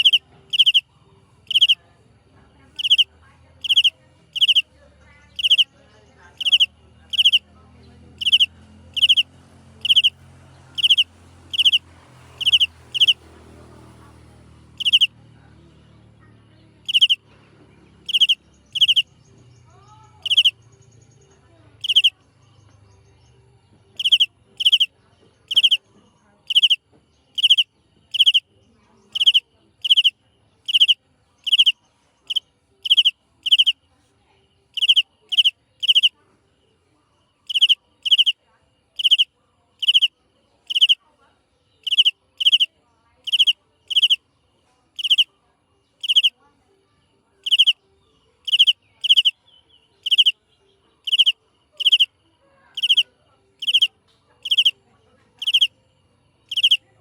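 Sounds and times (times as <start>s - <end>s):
small animal calling: 0.0s - 1.8s, 2.8s - 4.7s, 5.3s - 5.7s, 6.3s - 13.9s, 14.7s - 15.2s, 16.8s - 17.2s, 18.0s - 19.1s, 19.8s - 20.6s, 21.8s - 22.2s, 24.0s - 25.8s, 26.4s - 26.8s, 27.4s - 28.5s, 29.1s - 33.8s, 34.8s - 36.2s, 37.4s - 38.4s, 39.0s - 41.0s, 41.8s - 44.2s, 45.0s - 45.4s, 46.0s - 46.4s, 47.4s - 47.8s, 48.4s - 49.4s, 50.0s - 50.4s, 51.0s - 55.8s, 56.4s - 56.8s.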